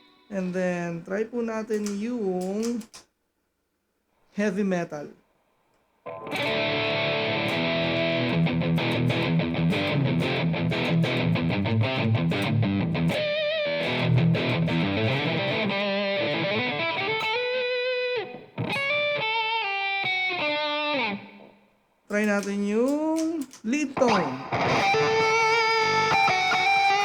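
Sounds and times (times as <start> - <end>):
distorted electric guitar riff: 6.1 - 21.5, 24.0 - 27.0
electric guitar lead phrases: 6.1 - 21.6, 24.0 - 27.0.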